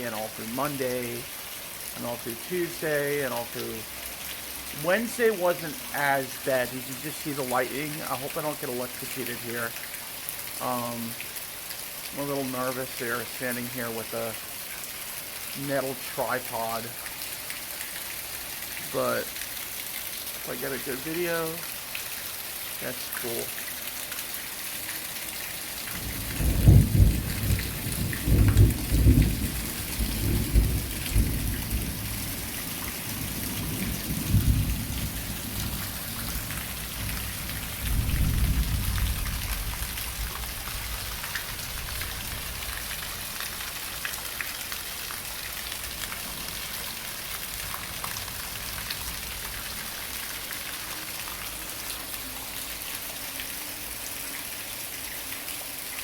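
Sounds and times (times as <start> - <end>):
heavy rain pouring: 0.0 - 56.0
rolling thunder: 26.0 - 32.5, 33.1 - 42.6.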